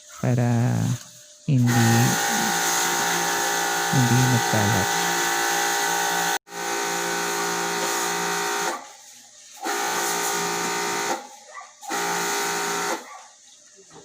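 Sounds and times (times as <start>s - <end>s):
pressure washer motor running: 1.6s - 8.9s, 9.5s - 13.1s.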